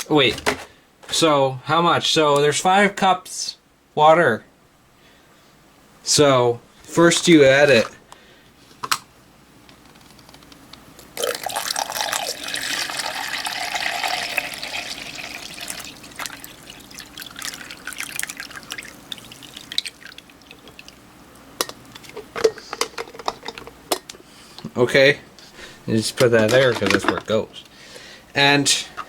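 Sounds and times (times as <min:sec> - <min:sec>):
water pouring in a stream: 0:11.2 - 0:21.0.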